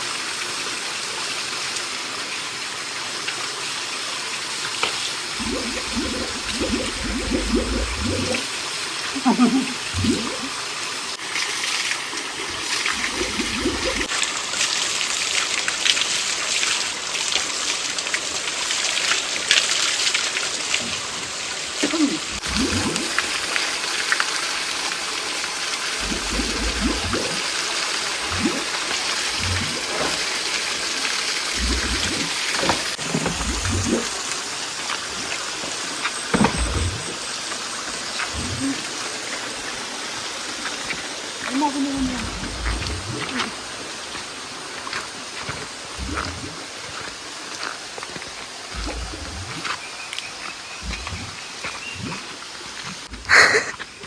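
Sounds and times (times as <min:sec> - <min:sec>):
stream water running: 0:00.0 - 0:54.0
water sloshing splashes: 0:04.9 - 0:08.6, 0:09.4 - 0:10.6, 0:11.3 - 0:14.3, 0:21.9 - 0:23.6, 0:26.0 - 0:54.0.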